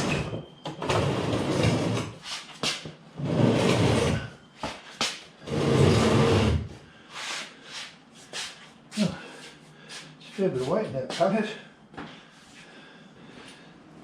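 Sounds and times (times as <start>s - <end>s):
heavy pallet scraping: 3.2s - 4.3s, 5.4s - 6.7s.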